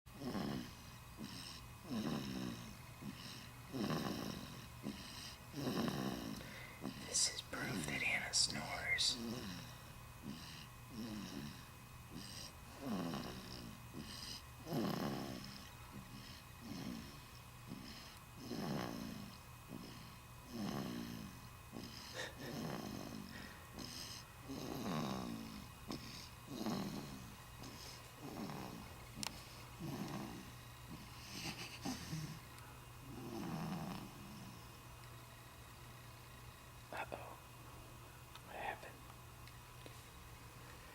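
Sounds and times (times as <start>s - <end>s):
baby snoring: 0.1s - 32.4s, 33.0s - 34.7s
soft high hiss: 6.2s - 9.8s.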